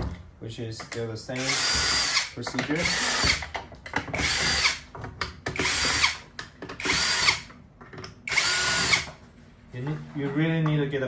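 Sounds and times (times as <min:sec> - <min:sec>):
power screwdriver whirring: 0:01.4 - 0:03.4, 0:04.2 - 0:04.8, 0:05.6 - 0:06.2, 0:06.8 - 0:07.5, 0:08.3 - 0:09.1.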